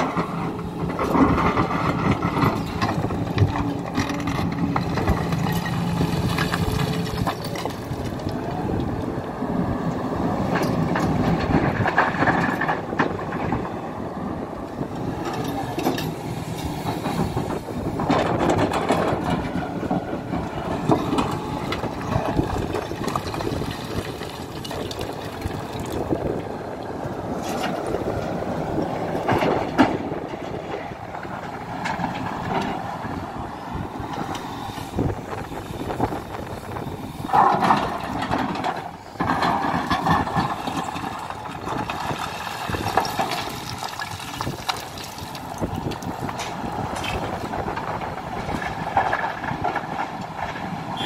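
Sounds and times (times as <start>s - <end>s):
excavator diesel engine under load: 0.0s - 51.0s
steel bucket clanking on stones: 20.9s - 26.2s, 39.3s - 47.2s.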